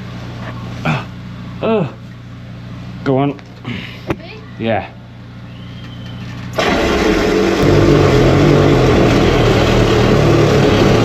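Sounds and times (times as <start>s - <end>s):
engine running: 5.0s - 11.0s.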